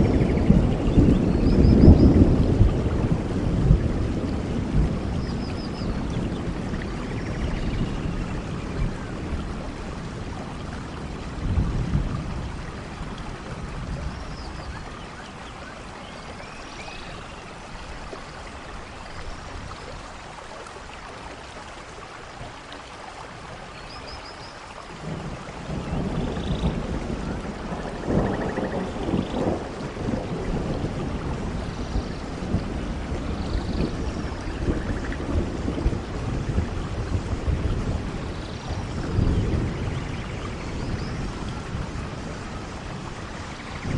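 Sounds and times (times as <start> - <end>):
thunder rumbling: 0.0 - 15.2, 25.0 - 43.9
steady rain: 0.0 - 43.9.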